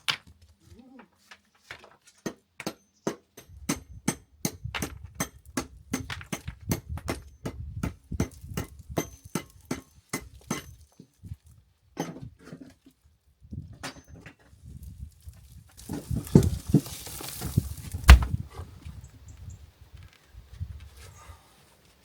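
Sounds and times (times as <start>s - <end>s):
hand tool striking stone: 18.0s - 18.4s.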